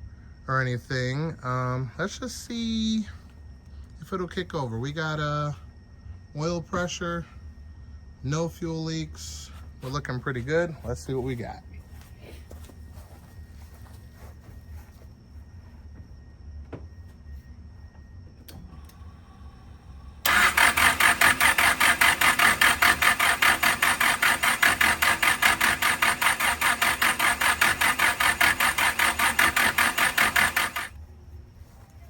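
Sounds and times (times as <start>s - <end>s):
engine cranking on starter: 20.2s - 31.0s.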